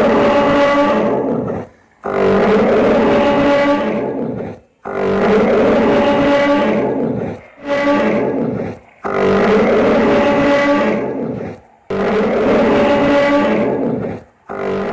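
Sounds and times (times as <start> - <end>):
dinosaur roar: 0.0 - 14.9.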